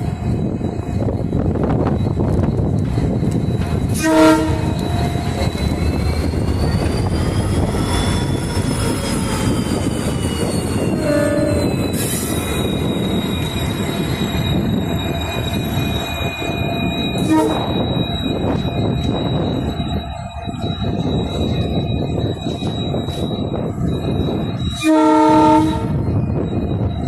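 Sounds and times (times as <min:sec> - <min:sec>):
diesel locomotive rumbling: 0:00.0 - 0:27.0
locomotive horn blasts: 0:03.9 - 0:04.9, 0:10.9 - 0:11.8, 0:17.2 - 0:17.8, 0:24.7 - 0:26.1.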